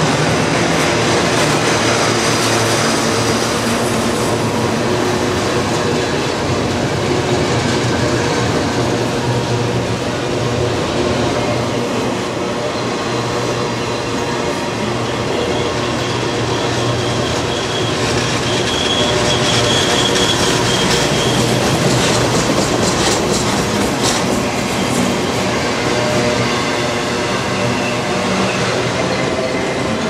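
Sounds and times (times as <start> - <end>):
train cars rumbling past: 0.0 - 30.0
wheel squeal: 15.1 - 30.0
wheels clacking over rail joints: 16.7 - 29.3.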